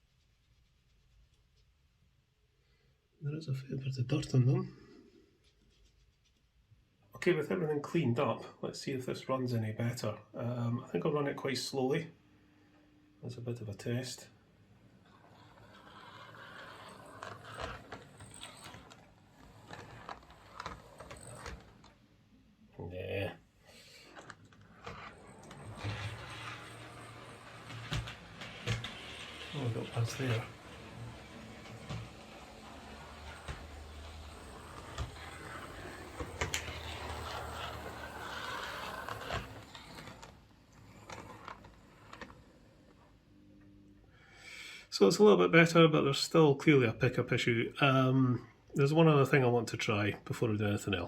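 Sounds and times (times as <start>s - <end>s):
model train motor whirring: 14.9s - 22.0s, 23.8s - 43.3s
wheels clicking and rattling: 15.1s - 22.0s, 24.2s - 43.0s.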